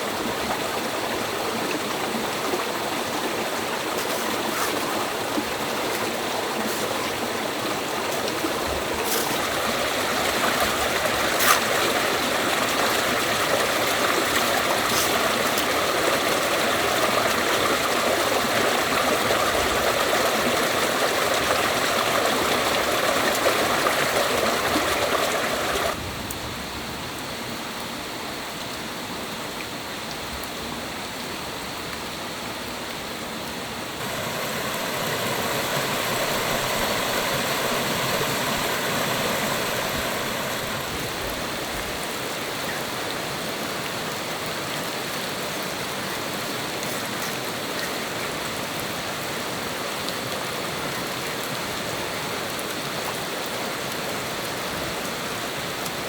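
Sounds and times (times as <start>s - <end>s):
stream water rushing: 0.0s - 26.1s, 28.3s - 56.0s.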